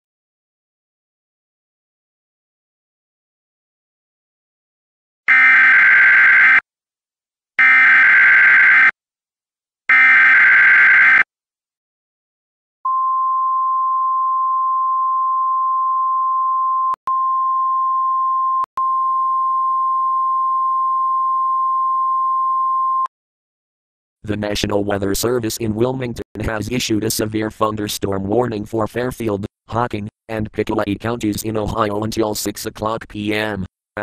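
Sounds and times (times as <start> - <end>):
steady single-pitch attention tone: 12.9 - 23.1.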